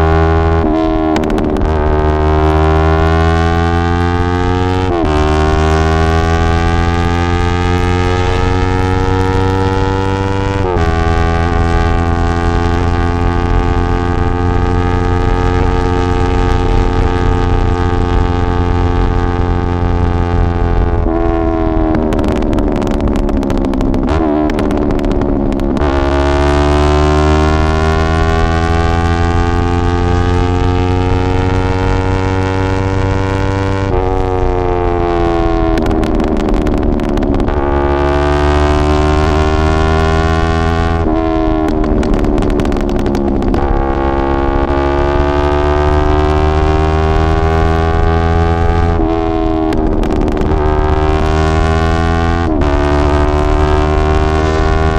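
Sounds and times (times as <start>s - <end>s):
exhaust crackles and pops: 0.0s - 54.9s
motorcycle engine at raised rpm: 0.0s - 54.9s.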